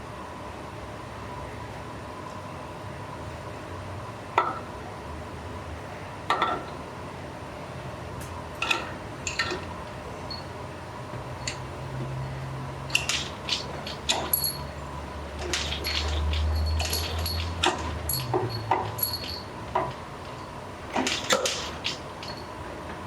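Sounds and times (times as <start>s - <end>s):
metal tools clinking and knocking: 8.6s - 10.5s, 11.4s - 11.7s, 12.8s - 22.6s.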